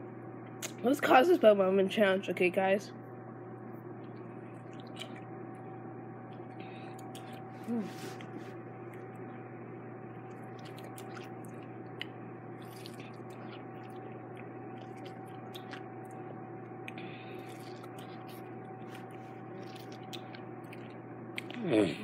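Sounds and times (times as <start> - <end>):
steady electrical hum: 0.0 - 22.0
wet squishing and chewing: 3.9 - 9.4, 10.1 - 21.6.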